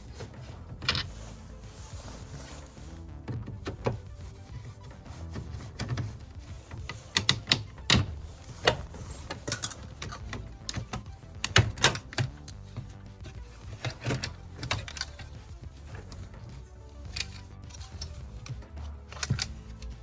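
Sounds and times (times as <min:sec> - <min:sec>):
clicks and knocks of hand tools: 0:05.4 - 0:20.0.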